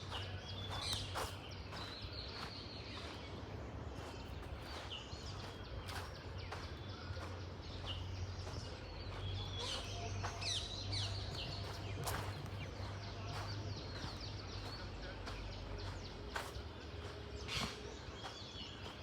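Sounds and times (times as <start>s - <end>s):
birds chirping and calling: 0.0s - 19.0s.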